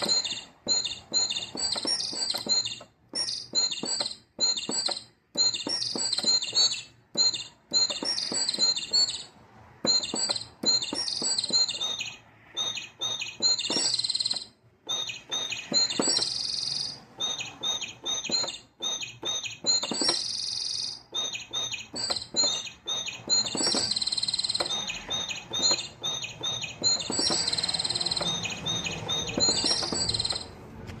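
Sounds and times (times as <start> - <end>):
electronic keyboard bird tweets: 0.0 - 30.6.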